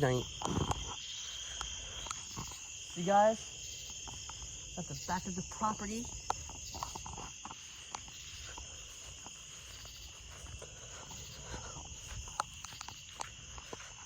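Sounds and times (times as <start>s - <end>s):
high-pitched insect chorus: 0.0s - 14.0s
faint clicks: 12.3s - 13.9s.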